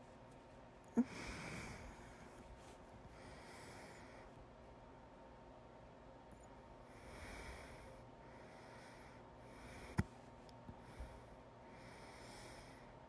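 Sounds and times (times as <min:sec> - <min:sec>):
person breathing softly: 0:01.0 - 0:04.4, 0:06.8 - 0:13.0.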